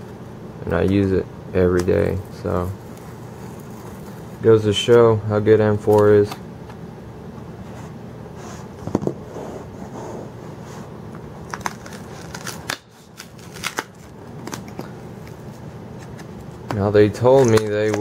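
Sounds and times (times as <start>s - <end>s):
low background hum: 0.0s - 18.0s
packing material rustling: 11.4s - 18.0s.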